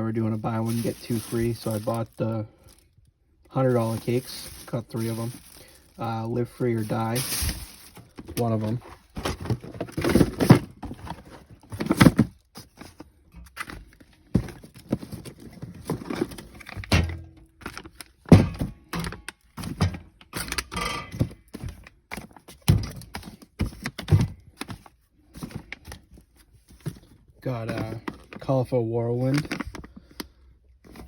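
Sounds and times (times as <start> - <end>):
cardboard rustling: 0.0 - 2.9, 3.5 - 16.9, 21.2 - 28.6
cardboard boxes thunking: 6.8 - 13.0, 13.7 - 17.3, 18.3 - 20.1.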